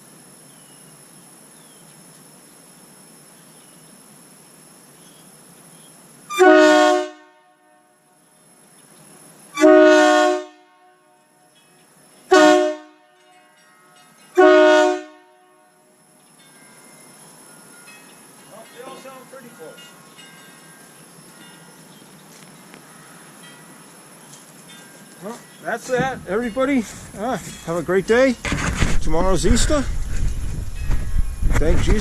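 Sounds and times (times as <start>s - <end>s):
train horn blasts: 6.3s - 8.2s, 9.5s - 11.5s, 12.3s - 16.0s.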